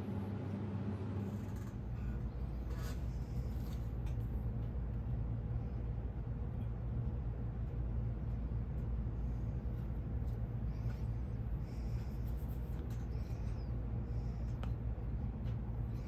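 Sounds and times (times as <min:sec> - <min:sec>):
steady low machine hum: 0:00.0 - 0:16.0.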